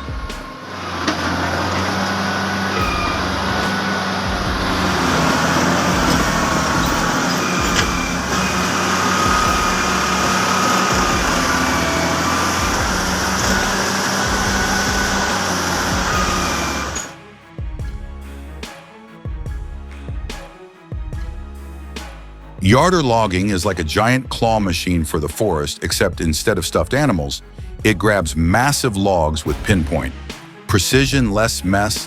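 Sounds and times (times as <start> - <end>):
heavy vehicle engine running: 0.0 - 17.2.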